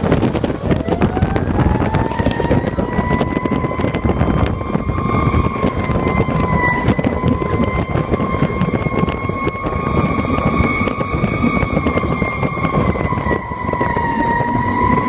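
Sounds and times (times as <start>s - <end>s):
engine rumble: 0.0s - 15.0s
fire engine siren wailing: 0.0s - 15.0s
wind noise on microphone: 0.0s - 15.0s.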